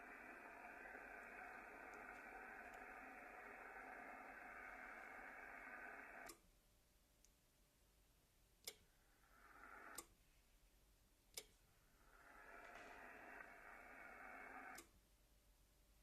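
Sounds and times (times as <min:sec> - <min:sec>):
radio interference hiss: 0:00.0 - 0:06.3, 0:12.2 - 0:14.8.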